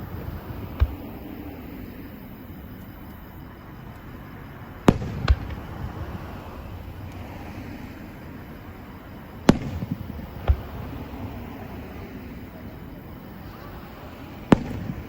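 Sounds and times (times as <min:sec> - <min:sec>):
fireworks bangs: 0:00.0 - 0:02.8, 0:04.8 - 0:08.2, 0:09.3 - 0:12.6, 0:14.5 - 0:15.0
fireworks crackle: 0:00.0 - 0:03.2, 0:04.8 - 0:12.5.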